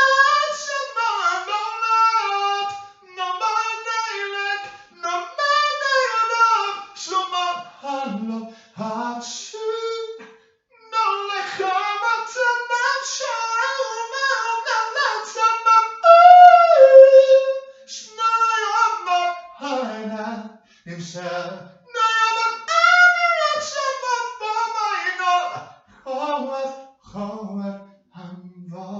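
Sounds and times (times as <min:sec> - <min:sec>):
high-pitched voice singing: 0:10.8 - 0:19.3.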